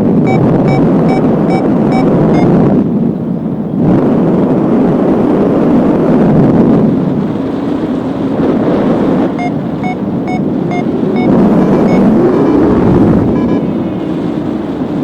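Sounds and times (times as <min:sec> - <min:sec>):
wind buffeting microphone: 0:00.0 - 0:15.0
variometer short beeps: 0:00.2 - 0:02.6, 0:09.3 - 0:13.8.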